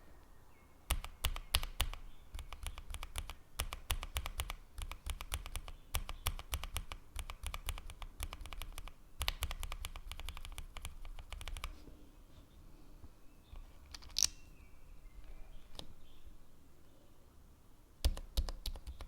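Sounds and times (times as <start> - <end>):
mechanical keyboard typing: 0.9 - 11.7, 18.0 - 19.0.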